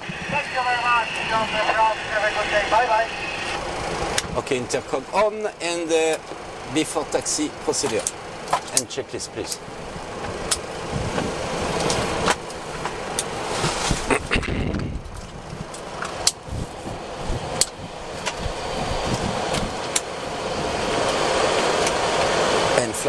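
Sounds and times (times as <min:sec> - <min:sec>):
jet engines idling: 0:00.0 - 0:23.0
cockpit switch clicks: 0:07.7 - 0:13.3, 0:15.6 - 0:16.5, 0:17.5 - 0:20.3.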